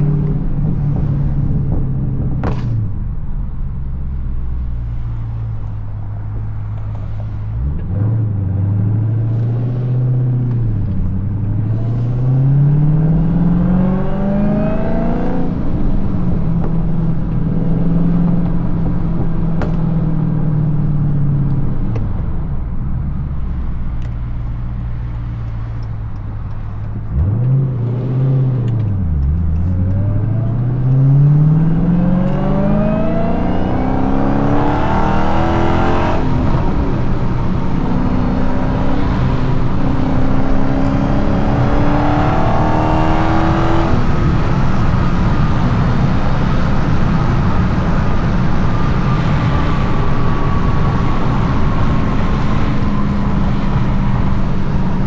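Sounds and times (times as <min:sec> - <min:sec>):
car engine revving loudly: 0:11.4 - 0:16.1, 0:27.1 - 0:55.0.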